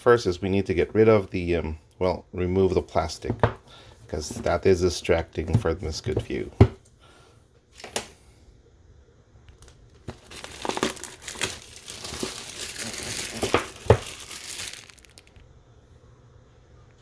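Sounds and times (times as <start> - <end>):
plastic wrapping crinkling: 9.6 - 15.4.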